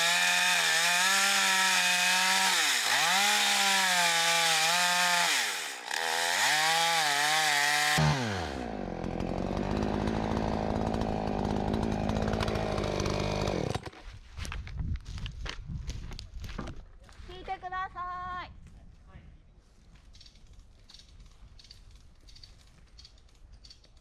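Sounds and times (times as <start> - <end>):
chainsaw cutting wood: 0.0 - 14.2.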